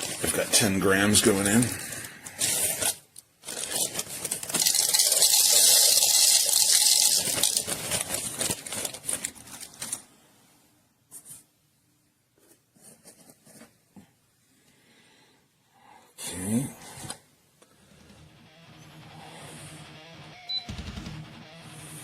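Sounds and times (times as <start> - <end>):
coffee grinder grinding beans: 0.0 - 10.0.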